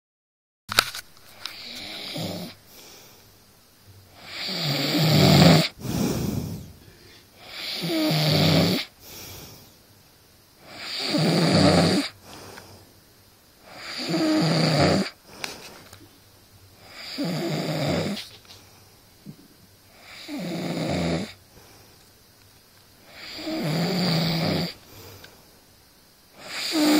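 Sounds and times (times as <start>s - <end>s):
quiet breathing: 1.3s - 14.4s, 15.0s - 22.4s, 23.0s - 26.9s
man snoring: 1.5s - 3.0s, 4.1s - 9.6s, 10.6s - 12.2s, 13.6s - 15.2s, 16.8s - 18.3s, 19.9s - 21.4s, 23.0s - 24.8s, 26.4s - 26.9s.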